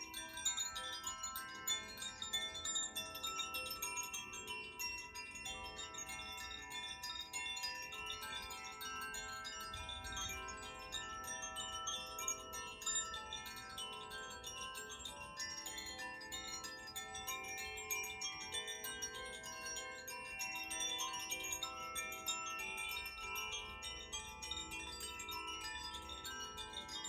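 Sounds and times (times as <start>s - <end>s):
hanging chimes ringing: 7.3s - 15.6s.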